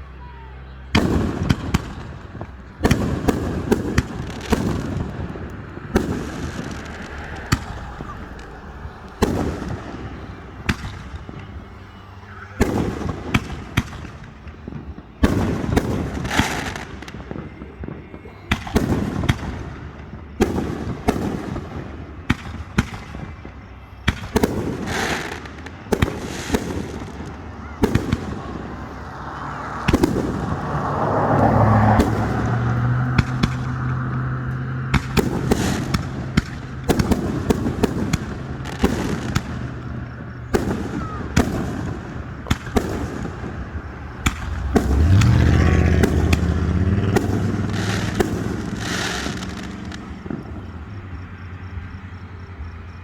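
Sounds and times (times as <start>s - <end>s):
fireworks crackling: 0.0s - 52.0s
firework shell bursts: 46.0s - 50.4s.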